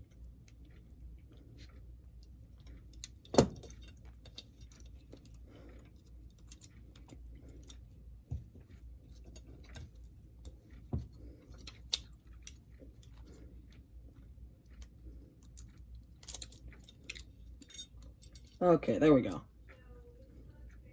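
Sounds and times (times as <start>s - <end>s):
hand tools on metal parts: 2.7s - 13.2s, 15.5s - 18.6s.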